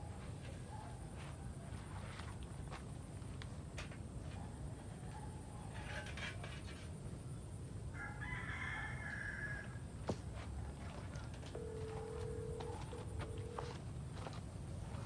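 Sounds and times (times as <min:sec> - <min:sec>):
rooster crowing: 0:07.9 - 0:09.9.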